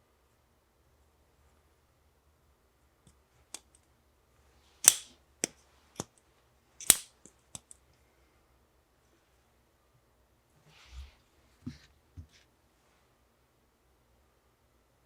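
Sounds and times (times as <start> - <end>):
knife mechanism clicking: 4.8 - 5.1, 6.8 - 7.8.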